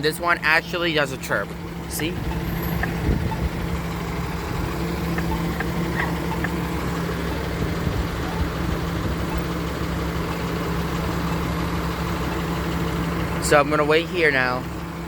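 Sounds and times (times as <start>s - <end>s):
idling vehicle engines in traffic: 0.0s - 15.0s.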